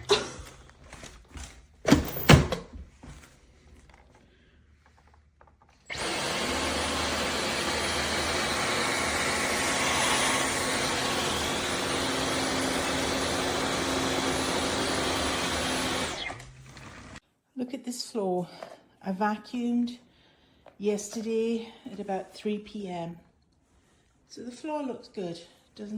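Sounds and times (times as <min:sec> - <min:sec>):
cordless vacuum running: 0:05.8 - 0:17.2.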